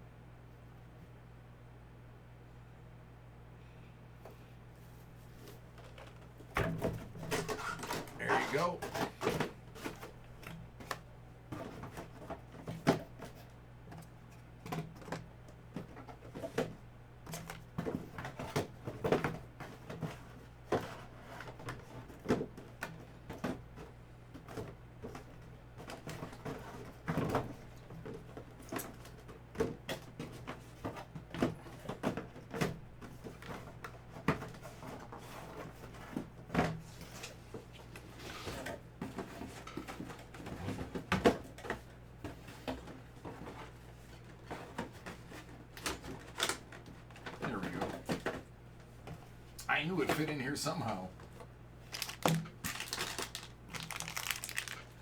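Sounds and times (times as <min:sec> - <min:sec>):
items handled on a table: 0:51.2 - 0:55.0.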